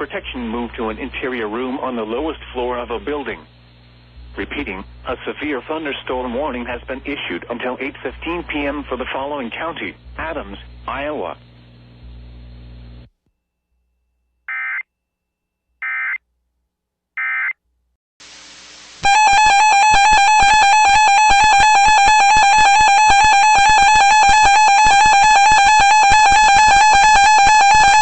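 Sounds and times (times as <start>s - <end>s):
data bursts: 19.0s - 28.0s
two-tone alarm with beating pulse: 19.0s - 28.0s.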